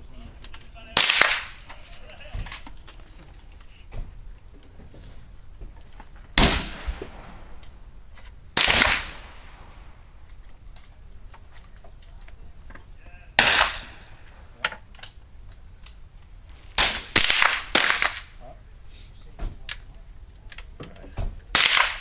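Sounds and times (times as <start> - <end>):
rifle gunshots: 1.0 - 1.6, 6.4 - 7.4, 8.6 - 9.8, 13.4 - 14.2, 16.6 - 18.3, 21.5 - 22.0
faint gunshot cracks: 1.0 - 1.7, 6.4 - 7.3, 8.6 - 9.5, 13.4 - 14.1, 16.6 - 18.3, 21.5 - 22.0.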